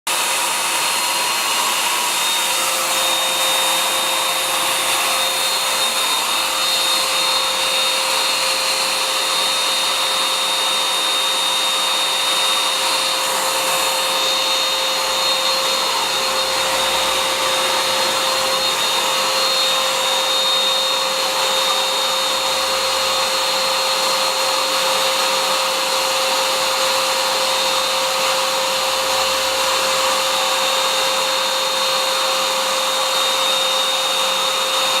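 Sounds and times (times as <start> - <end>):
electric air pump blowing: 0.1 - 35.0.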